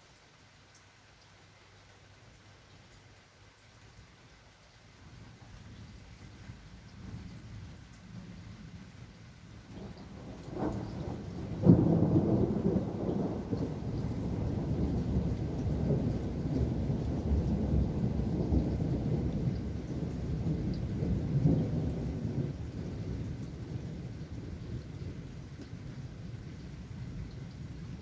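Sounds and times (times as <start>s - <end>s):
steady rain: 0.0s - 28.0s
thunder clap and rumble: 5.6s - 28.0s.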